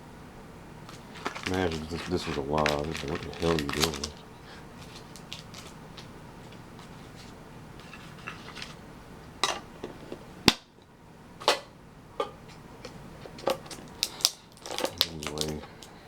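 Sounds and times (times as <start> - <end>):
hands handling metal tin: 0.9 - 4.2, 7.8 - 8.8.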